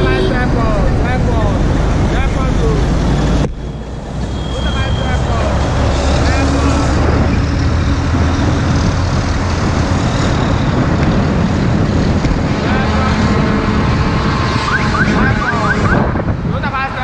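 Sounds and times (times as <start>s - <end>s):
road traffic rumble: 0.0s - 17.0s.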